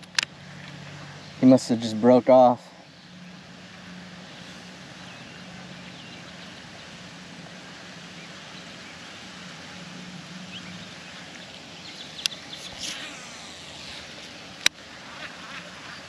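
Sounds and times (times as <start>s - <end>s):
distant road traffic: 0.0s - 16.0s
sharp clicks: 12.2s - 12.9s.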